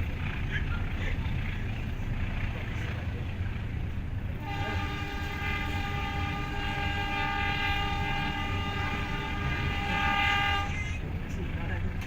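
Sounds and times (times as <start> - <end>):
locomotive engine rumble: 0.0 - 12.0
locomotive horn blast: 4.4 - 11.0.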